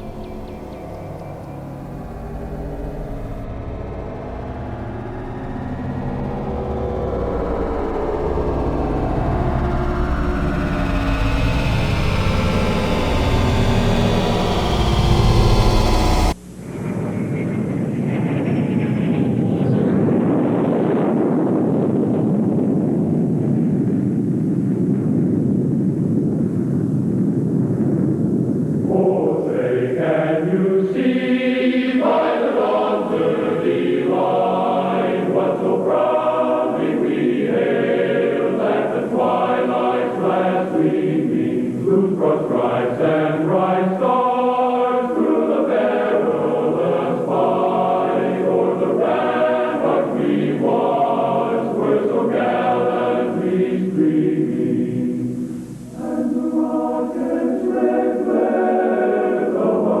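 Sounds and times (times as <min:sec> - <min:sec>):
choir singing: 0:00.0 - 0:16.4, 0:28.9 - 1:00.0.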